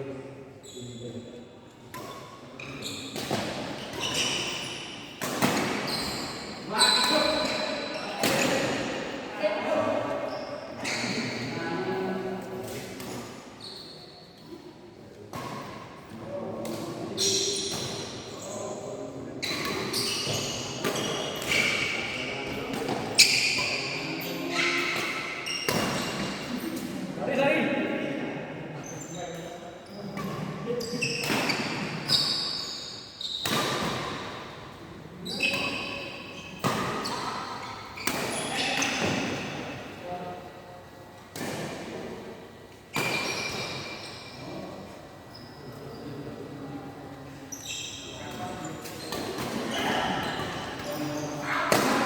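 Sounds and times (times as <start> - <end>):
shoes squeaking on court: 2.0 - 8.8, 10.2 - 11.4, 19.4 - 26.8, 29.9 - 34.3, 35.2 - 39.6, 42.9 - 44.6, 47.5 - 51.4
racket hitting shuttlecock: 51.7 - 52.0.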